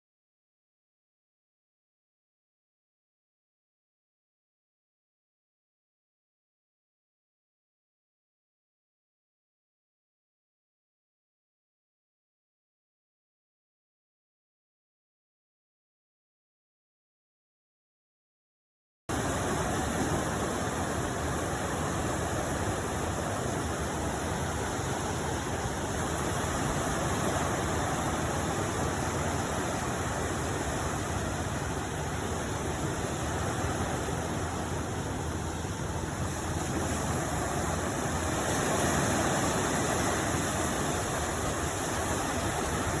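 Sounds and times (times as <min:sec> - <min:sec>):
sea surf rushing: 0:19.1 - 0:43.0.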